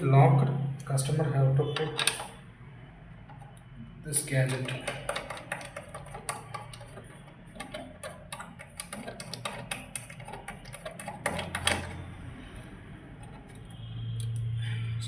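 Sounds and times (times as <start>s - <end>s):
hard parts clicking and knocking: 1.7s - 2.4s, 3.2s - 14.4s.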